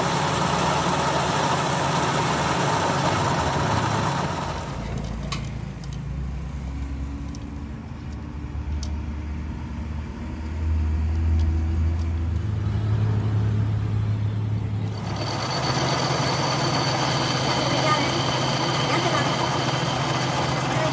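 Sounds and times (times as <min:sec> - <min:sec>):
low machine drone: 0:12.6 - 0:20.9.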